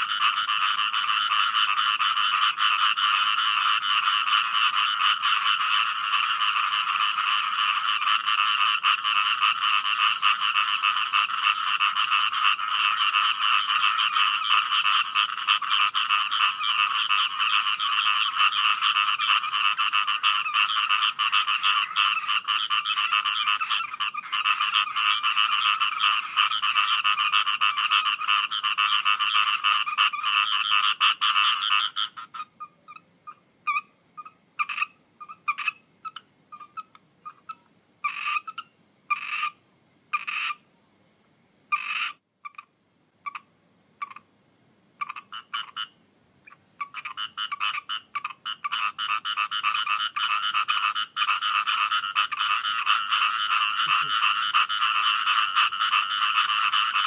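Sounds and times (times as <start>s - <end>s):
frogs croaking in chorus: 0.0s - 57.0s.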